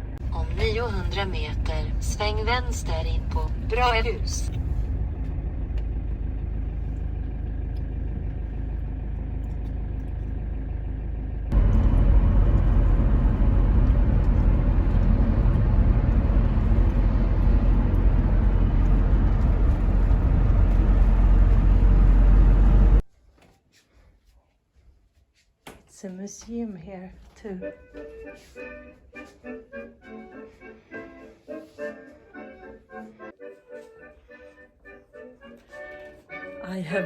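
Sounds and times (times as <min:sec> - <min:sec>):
vehicle road and engine rumble: 0:00.0 - 0:23.0.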